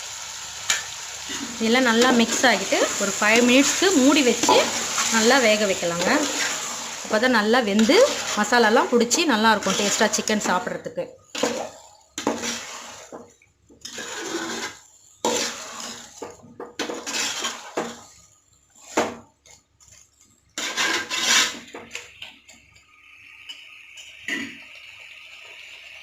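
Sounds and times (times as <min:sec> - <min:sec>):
steady hiss: 0:00.0 - 0:10.3
metal spoon scraping pot: 0:00.7 - 0:10.7, 0:11.3 - 0:13.2, 0:13.8 - 0:19.6, 0:20.6 - 0:21.8.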